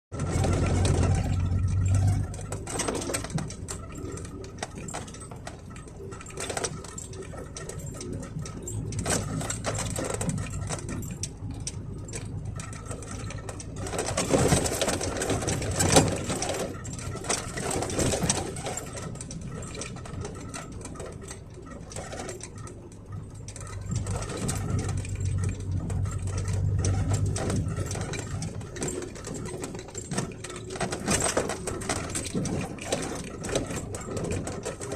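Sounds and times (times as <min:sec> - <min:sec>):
low engine drone: 0:00.1 - 0:06.2
rattles: 0:00.1 - 0:34.9
truck cab squeaking and creaking: 0:00.2 - 0:34.9.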